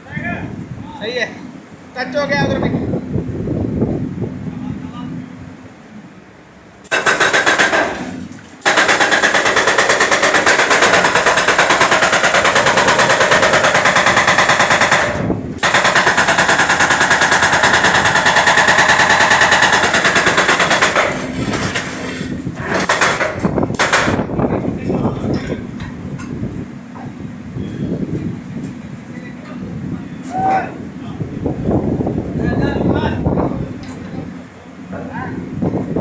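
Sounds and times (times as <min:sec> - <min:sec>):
jackhammer hammering concrete: 0:06.9 - 0:24.3.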